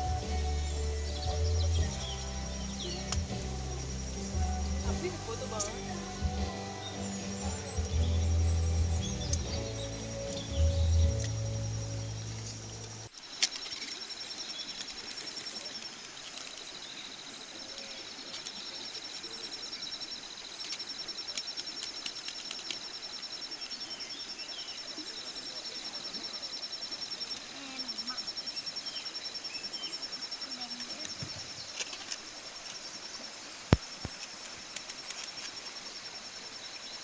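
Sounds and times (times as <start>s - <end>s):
background music: 0.0s - 13.1s
insects trilling: 0.0s - 37.0s
sharp clicks: 20.6s - 22.9s.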